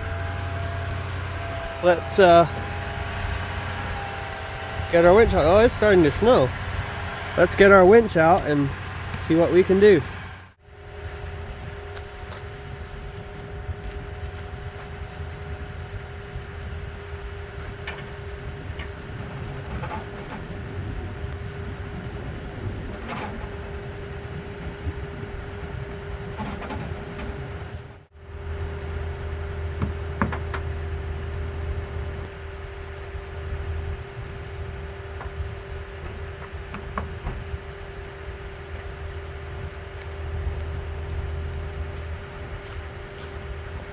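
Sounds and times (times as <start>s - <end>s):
truck engine idling: 0.0s - 20.8s, 26.8s - 43.9s.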